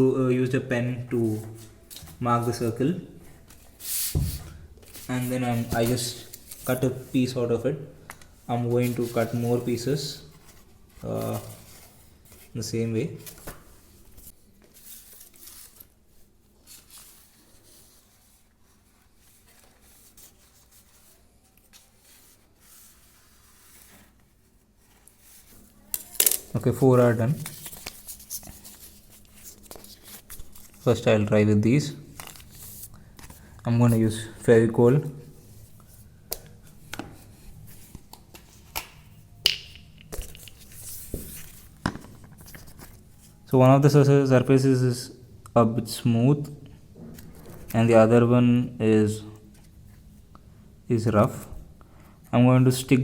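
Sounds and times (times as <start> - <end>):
small objects clicking in hand: 39.4 - 40.6.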